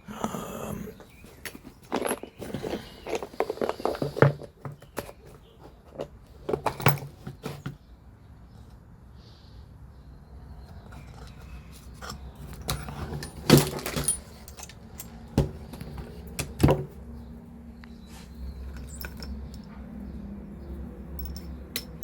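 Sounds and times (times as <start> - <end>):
metal clicks and knocks: 21.1 - 22.0.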